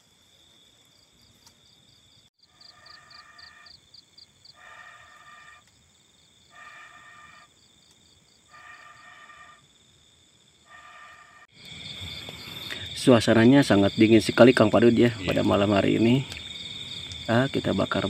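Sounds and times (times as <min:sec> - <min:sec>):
crickets chirping: 0:00.0 - 0:18.0.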